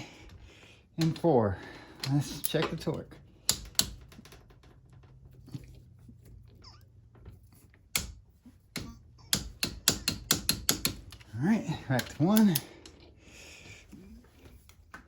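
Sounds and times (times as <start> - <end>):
ratchet clicks: 11.9 - 13.0.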